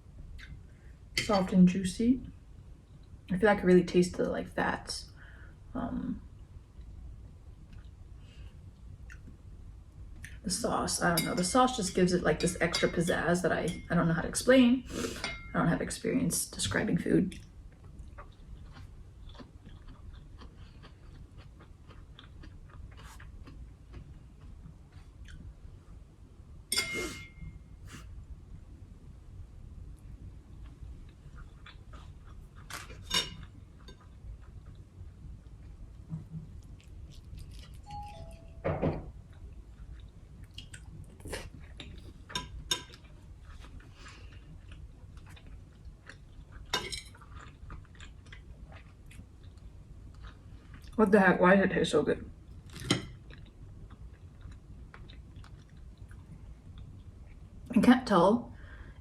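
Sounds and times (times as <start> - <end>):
person chewing food: 17.4 - 25.7, 30.6 - 38.6, 39.2 - 51.0, 52.6 - 57.6
utensils clinking on dishware: 26.7 - 27.4.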